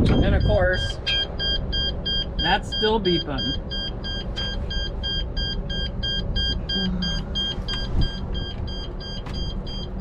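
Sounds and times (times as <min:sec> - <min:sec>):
electronic beeper beeping: 0:00.0 - 0:10.0
low rumble: 0:00.0 - 0:10.0.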